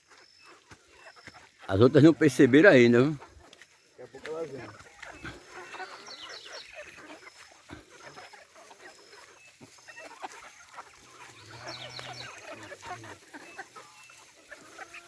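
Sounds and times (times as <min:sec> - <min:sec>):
hens clucking: 0:00.0 - 0:15.0
hen drawn-out call: 0:04.5 - 0:15.0.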